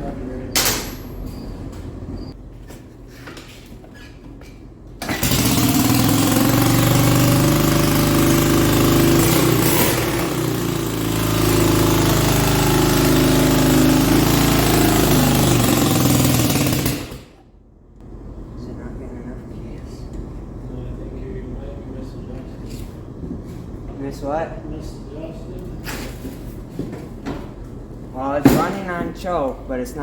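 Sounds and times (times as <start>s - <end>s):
atv engine starting and running: 5.0s - 17.5s.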